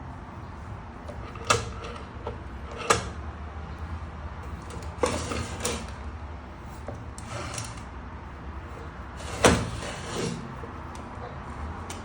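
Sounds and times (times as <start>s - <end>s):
machine carriage scraping: 1.1s - 3.2s, 4.4s - 6.1s, 6.7s - 7.9s, 8.7s - 10.8s
key-cutting machine humming: 4.5s - 6.0s.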